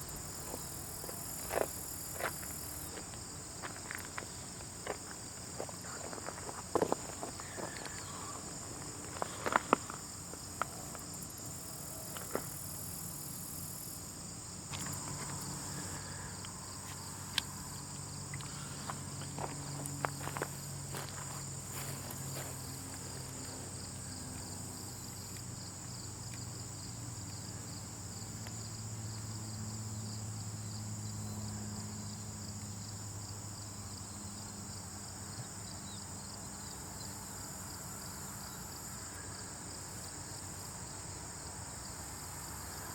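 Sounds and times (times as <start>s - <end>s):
insect chirring: 0.0s - 31.4s.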